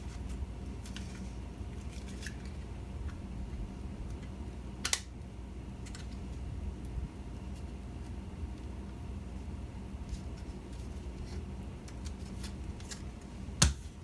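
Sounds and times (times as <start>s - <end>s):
low room hum: 0.0s - 14.0s
sharp plastic snap: 4.8s - 5.1s.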